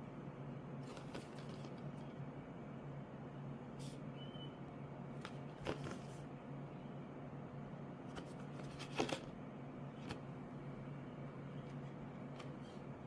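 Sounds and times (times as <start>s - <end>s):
steady low hum: 0.0s - 13.0s
handling rustles and clicks: 0.8s - 2.1s, 5.2s - 6.2s, 8.1s - 9.3s.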